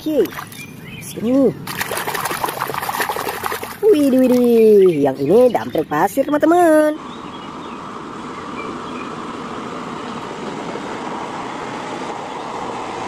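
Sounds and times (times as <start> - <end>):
water rushing over toy truck: 1.7 - 4.4.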